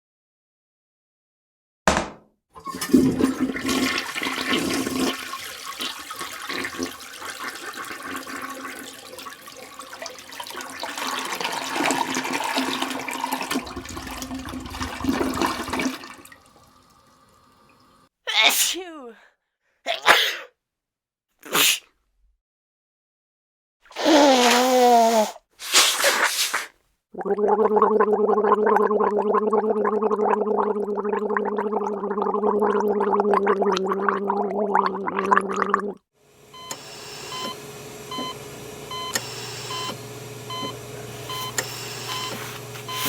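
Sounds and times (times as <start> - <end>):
toilet water rushing: 2.6 - 18.1, 30.7 - 43.0
person sneezing: 18.3 - 19.3, 19.9 - 20.5, 21.4 - 21.9, 23.9 - 26.7.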